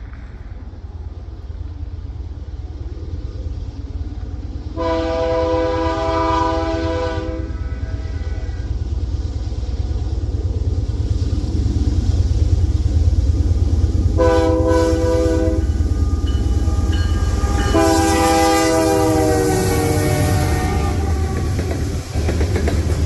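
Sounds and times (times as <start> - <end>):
diesel locomotives rumbling: 0.0 - 23.0
locomotive air horn: 4.8 - 8.6, 14.2 - 21.8.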